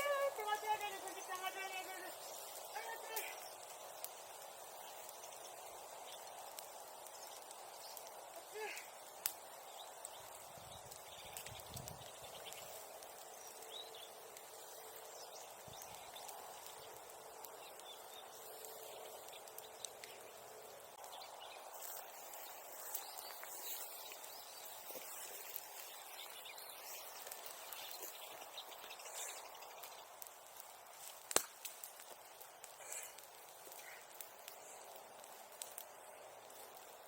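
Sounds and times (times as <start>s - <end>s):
wood bonfire crackling: 0.0s - 37.0s
small sharp pops: 31.0s - 34.8s.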